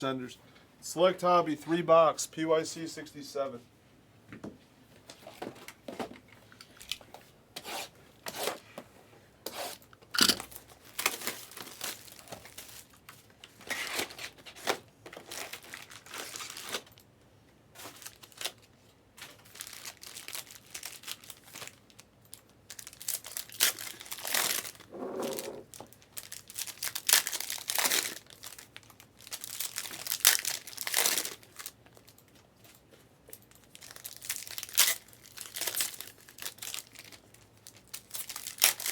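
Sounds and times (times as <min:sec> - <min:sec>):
plastic wrapping tearing and crinkling: 0:10.2 - 0:17.0, 0:17.8 - 0:31.8, 0:33.5 - 0:38.9.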